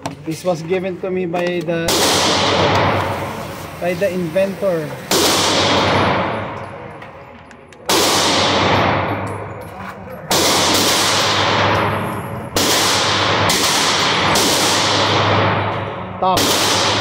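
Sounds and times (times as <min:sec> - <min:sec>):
pistol shots echoing: 0:01.8 - 0:03.6, 0:05.1 - 0:07.0, 0:07.8 - 0:09.6, 0:10.2 - 0:17.0.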